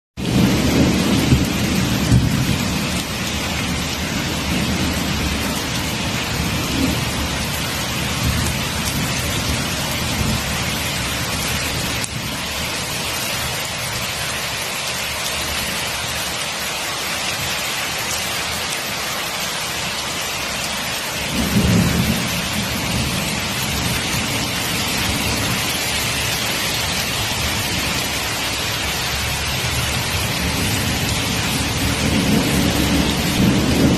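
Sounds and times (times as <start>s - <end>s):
thunder rumbling: 0.2s - 13.0s, 21.2s - 33.9s
heavy rain falling: 0.2s - 33.9s.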